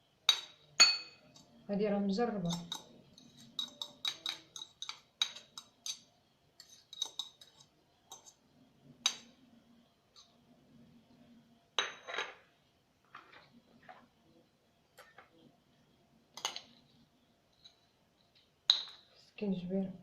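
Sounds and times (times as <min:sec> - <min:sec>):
metal spoon clinking against dish: 0:00.3 - 0:01.5, 0:02.4 - 0:08.4
spoon scraping dish: 0:02.4 - 0:08.4.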